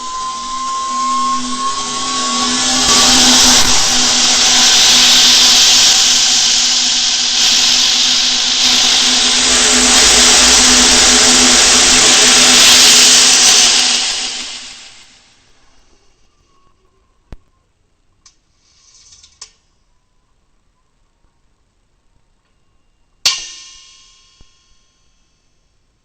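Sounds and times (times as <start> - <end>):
faint rising tone: 0.0 - 6.8
rocket engine roar: 0.0 - 15.4.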